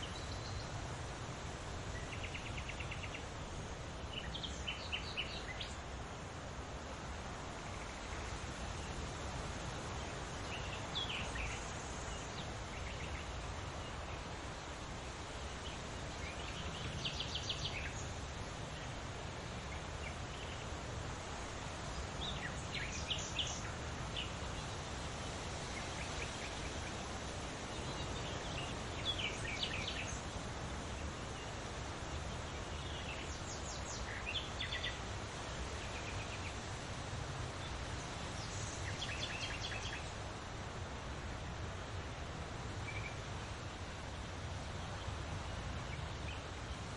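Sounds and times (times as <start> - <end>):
songbirds chirping and trilling: 0.0 - 46.9
wind in leaves: 0.0 - 46.9.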